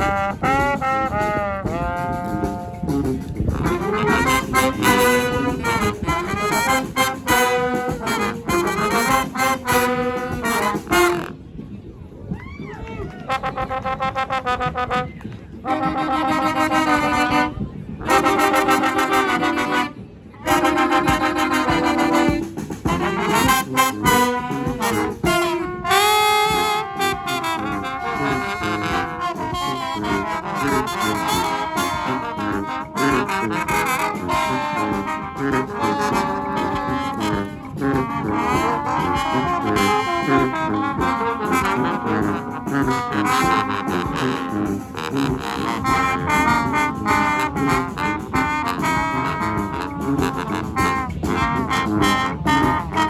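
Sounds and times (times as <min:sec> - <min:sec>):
brass band playing: 0:00.0 - 0:11.7, 0:13.2 - 0:53.0.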